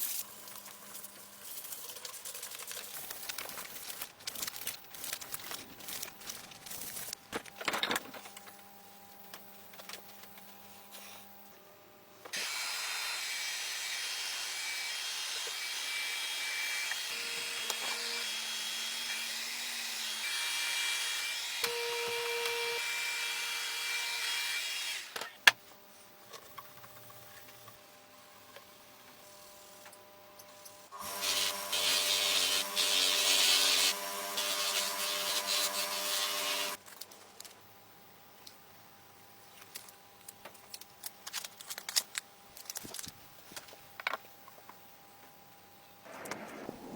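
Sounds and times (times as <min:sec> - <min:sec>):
power tool running: 0:12.3 - 0:23.7, 0:30.9 - 0:36.8.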